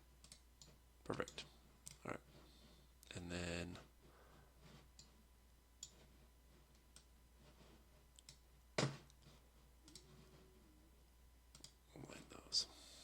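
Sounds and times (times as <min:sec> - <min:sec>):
computer mouse clicking: 0:00.2 - 0:02.0, 0:06.7 - 0:07.1, 0:08.2 - 0:08.4, 0:09.8 - 0:10.1, 0:11.5 - 0:11.8.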